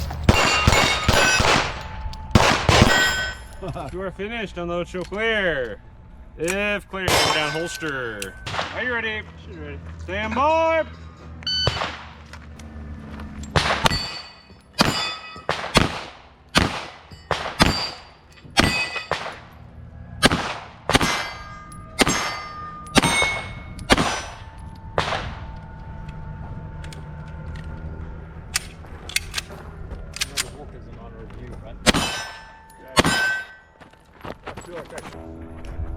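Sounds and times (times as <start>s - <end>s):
pistol shots: 0.0s - 3.6s, 7.0s - 8.9s, 11.6s - 12.2s, 13.5s - 19.5s, 20.2s - 25.5s, 31.9s - 33.6s
steel targets ringing: 0.0s - 12.2s, 13.5s - 19.6s, 20.2s - 27.3s, 31.8s - 34.1s.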